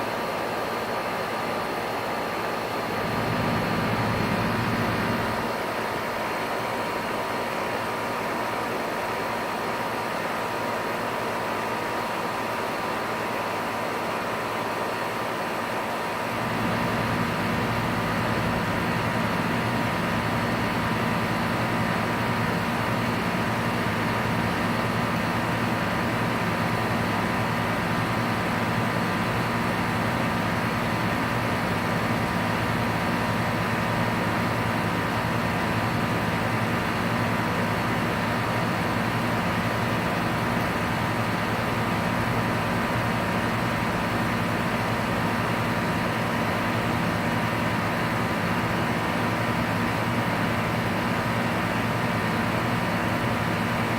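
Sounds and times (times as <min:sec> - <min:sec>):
compressor unit humming: 0:00.0 - 0:53.9.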